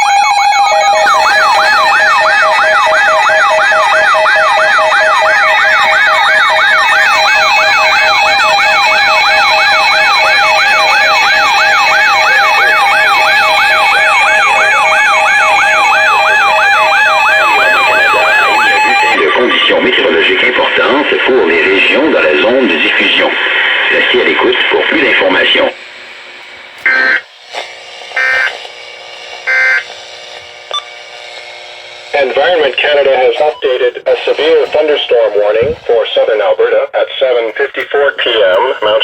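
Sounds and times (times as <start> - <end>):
rapid electronic siren sweep: 0.0 - 22.1, 26.8 - 27.3, 28.2 - 28.6, 29.4 - 29.9
steady alert tone: 26.8 - 27.2, 28.2 - 28.5, 29.5 - 29.8.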